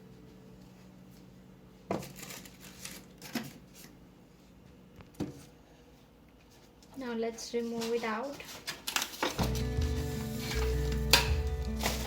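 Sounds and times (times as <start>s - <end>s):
packaging rustling: 2.0s - 3.9s, 8.4s - 12.0s.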